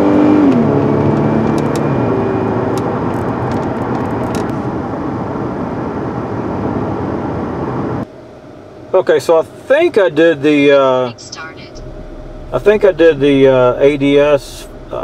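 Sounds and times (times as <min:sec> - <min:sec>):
car engine: 0:00.0 - 0:08.9, 0:10.4 - 0:15.0
road and tyre noise: 0:00.0 - 0:09.7, 0:11.2 - 0:15.0.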